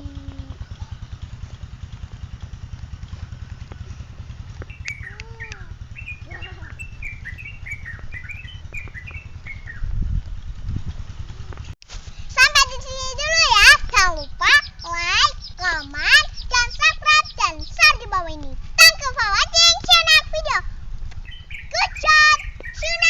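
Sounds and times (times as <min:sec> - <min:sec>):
small birds chirping: 0:00.0 - 0:10.2, 0:12.4 - 0:23.0
low pulsing rumble: 0:00.0 - 0:23.0.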